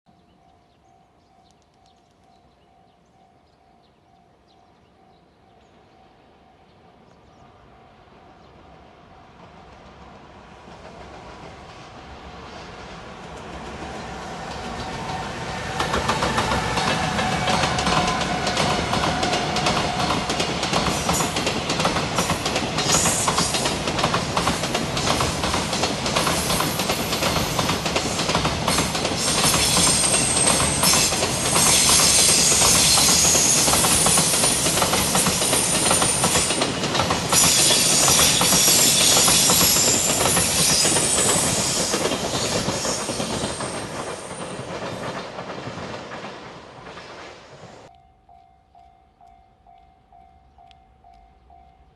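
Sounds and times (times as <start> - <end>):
train wheels clattering over rail joints: 12.7 - 47.9.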